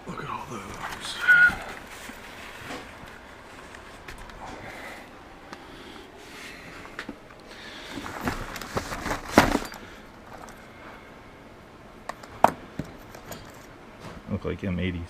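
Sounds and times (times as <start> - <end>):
boxes and parts rattling: 6.9 - 10.7, 12.2 - 14.2.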